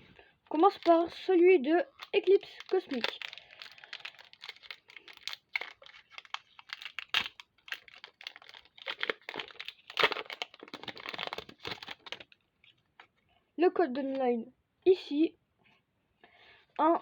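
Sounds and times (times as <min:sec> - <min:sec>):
foil wrapper crinkling and tearing: 0:00.5 - 0:12.4.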